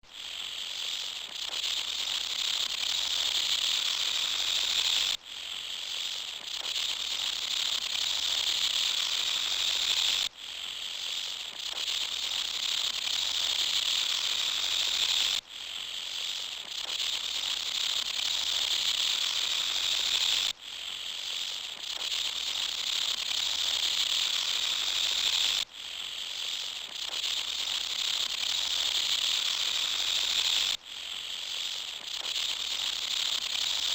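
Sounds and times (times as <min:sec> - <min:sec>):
rasping insect chorus: 0:00.0 - 0:33.9.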